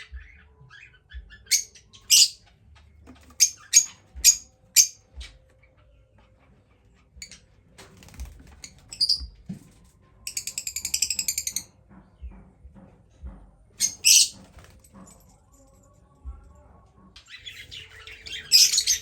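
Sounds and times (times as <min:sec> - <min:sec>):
parrots chirping: 0:00.0 - 0:02.4, 0:03.2 - 0:05.4, 0:10.3 - 0:11.7, 0:13.8 - 0:14.5, 0:17.3 - 0:19.0.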